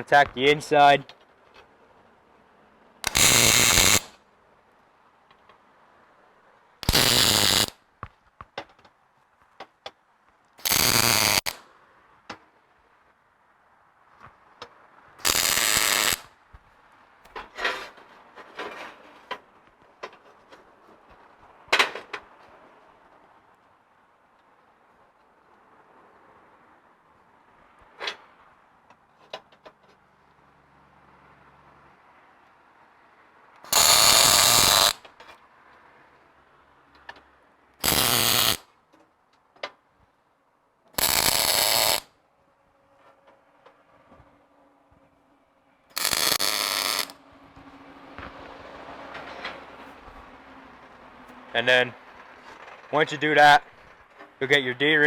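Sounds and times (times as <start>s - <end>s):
welder crackling and buzzing: 3.0s - 4.1s, 6.8s - 7.8s, 10.6s - 11.6s, 15.2s - 16.3s, 33.7s - 35.0s, 37.8s - 38.6s, 41.0s - 42.0s, 45.9s - 47.2s.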